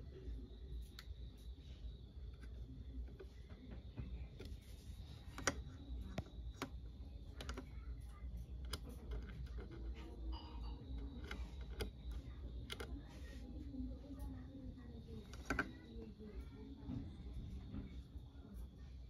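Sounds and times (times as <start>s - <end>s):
low steady hum: 0.0s - 19.0s
light clicks and taps: 2.2s - 10.3s, 10.9s - 13.2s.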